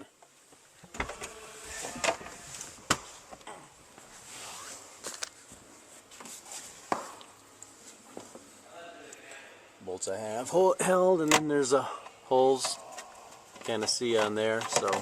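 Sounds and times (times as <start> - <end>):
hand tools clicking and scraping: 12.0 - 15.0.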